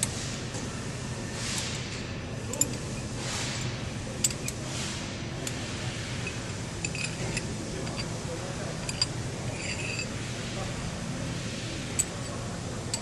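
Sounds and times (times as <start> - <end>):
steady low hum: 0.0 - 13.0
allen key clinking against metal: 2.5 - 3.0, 6.2 - 8.2, 8.8 - 10.2, 11.9 - 13.0
soft metal scraping: 9.5 - 10.2.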